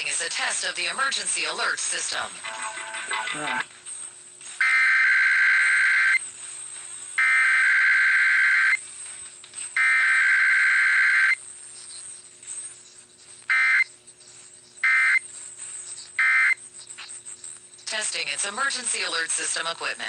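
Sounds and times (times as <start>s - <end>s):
harsh warbling data bursts: 9.8s - 20.0s.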